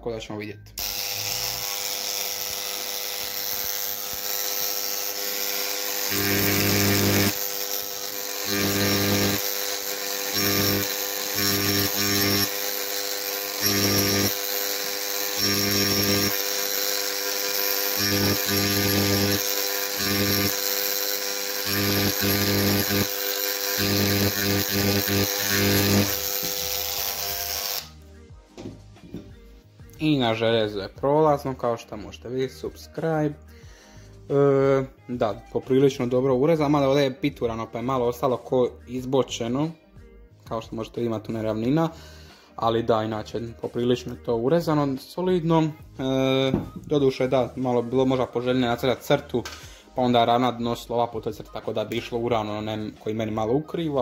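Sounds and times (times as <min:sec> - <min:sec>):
engraving pen buzzing on metal: 0:00.8 - 0:28.0.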